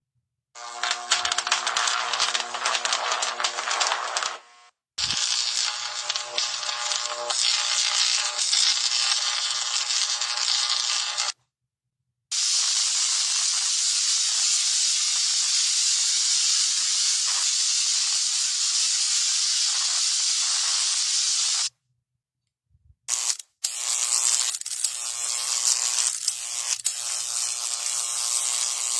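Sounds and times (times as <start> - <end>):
electric buzz: 0.6 - 11.4, 23.1 - 28.9
electric current crackling: 0.6 - 11.4.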